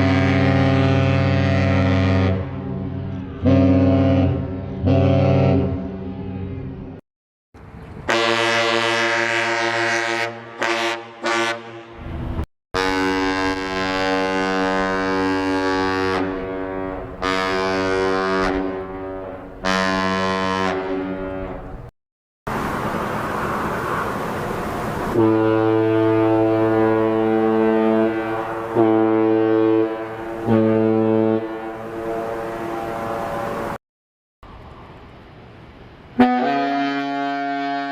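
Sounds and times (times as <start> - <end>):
ship whistle blasts: 3.4 - 5.7, 8.1 - 11.9, 12.8 - 21.9, 25.2 - 33.8, 36.2 - 37.9.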